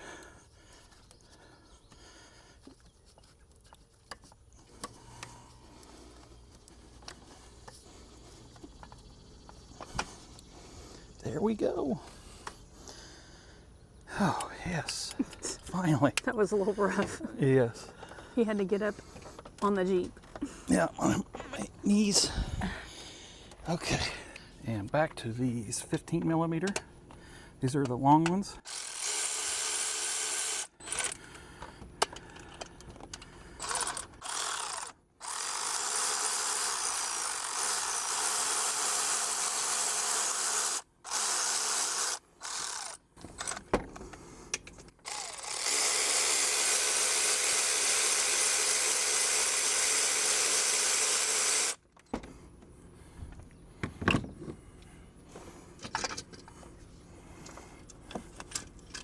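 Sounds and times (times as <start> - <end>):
power tool running in bursts: 28.7 - 31.2, 33.6 - 43.5, 45.1 - 51.8.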